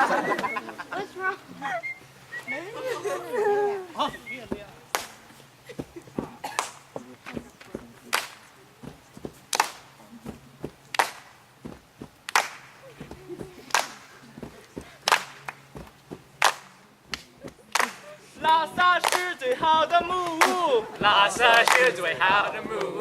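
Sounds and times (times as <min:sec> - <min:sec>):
scattered soft claps: 0:04.0 - 0:23.0
group clapping in unison: 0:08.1 - 0:08.4, 0:09.5 - 0:09.9, 0:10.9 - 0:11.3, 0:12.3 - 0:12.7, 0:13.7 - 0:14.0, 0:15.0 - 0:15.7, 0:16.4 - 0:23.0.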